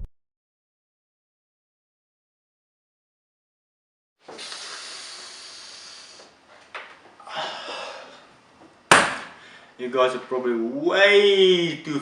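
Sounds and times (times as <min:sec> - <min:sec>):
steady hiss: 0:04.2 - 0:06.6.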